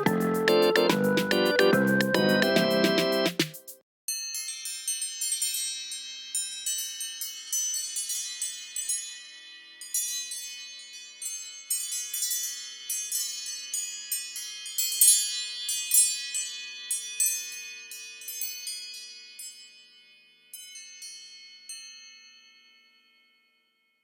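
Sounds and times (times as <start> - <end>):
bell-like ringtone chimes: 0.0 - 3.4.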